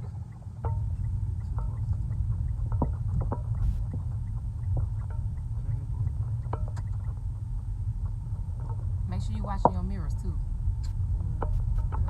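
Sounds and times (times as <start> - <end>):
car interior engine and road rumble: 0.0 - 12.0.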